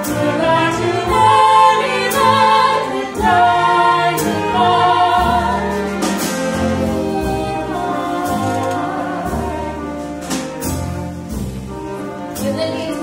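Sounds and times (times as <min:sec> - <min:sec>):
pit orchestra playing show tune: 0:00.0 - 0:13.0.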